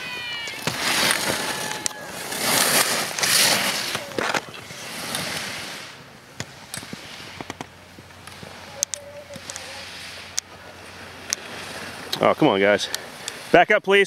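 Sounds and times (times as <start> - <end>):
skis scraping on snow: 0.0 - 14.0.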